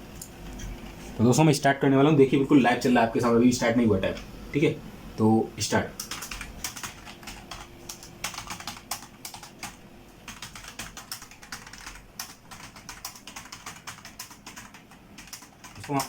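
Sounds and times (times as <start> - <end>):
typing on keyboard: 6.0 - 16.0.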